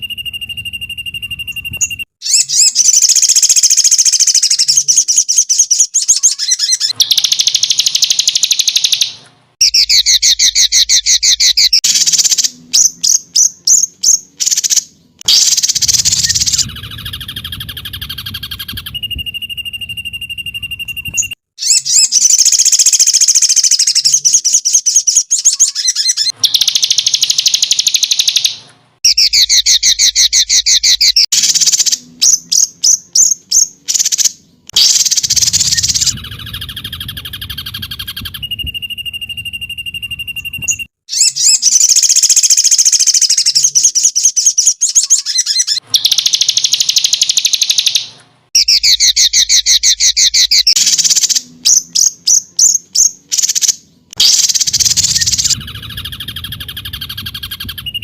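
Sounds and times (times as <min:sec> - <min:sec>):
steady whistle: 0:00.0 - 0:05.0, 0:15.2 - 0:24.1, 0:34.8 - 0:43.2
bird singing rapid trills: 0:00.0 - 0:58.0.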